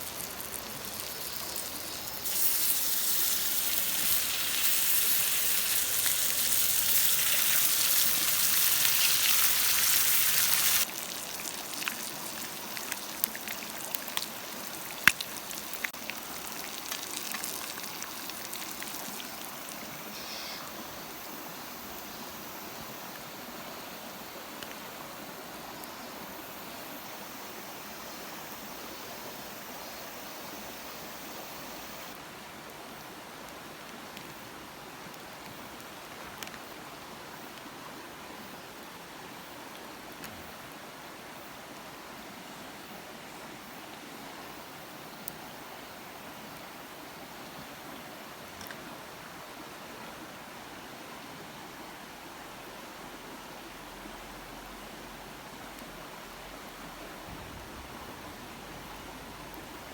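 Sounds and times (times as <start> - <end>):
food sizzling in a pan: 0.0 - 20.6.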